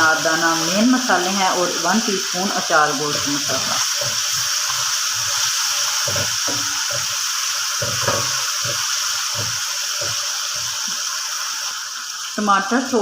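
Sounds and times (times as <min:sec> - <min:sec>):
vegetables sizzling in a pan: 0:00.0 - 0:13.0
low knocks: 0:07.8 - 0:10.7.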